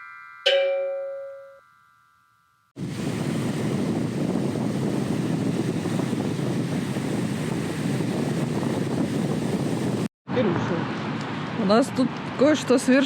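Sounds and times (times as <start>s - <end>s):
wind on microphone: 2.8s - 12.2s.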